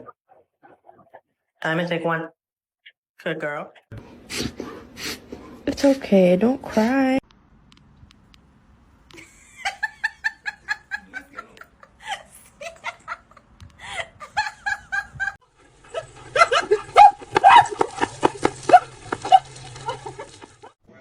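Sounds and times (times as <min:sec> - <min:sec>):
person laughing: 0:09.1 - 0:20.7.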